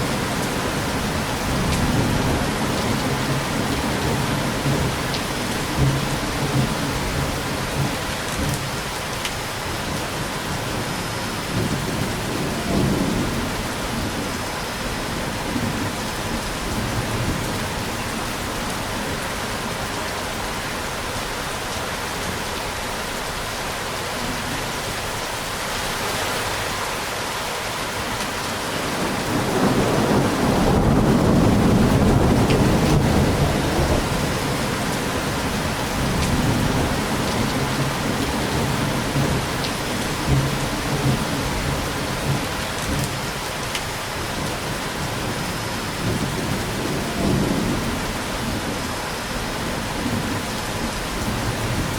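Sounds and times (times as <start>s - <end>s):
steady rain: 0.0s - 51.9s
rolling thunder: 28.8s - 43.2s.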